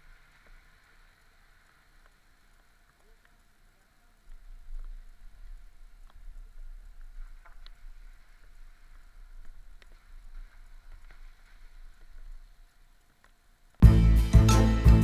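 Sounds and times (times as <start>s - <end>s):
low rumble: 13.8s - 15.0s.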